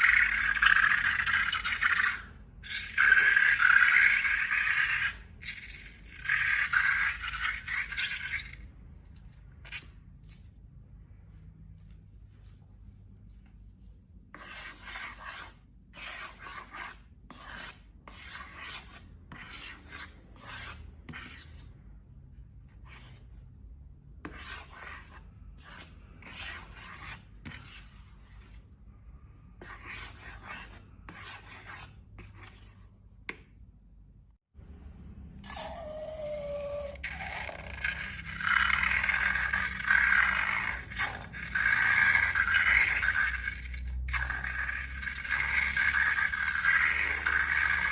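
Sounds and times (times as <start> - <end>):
slime being scraped: 0.0 - 10.5, 35.4 - 47.9.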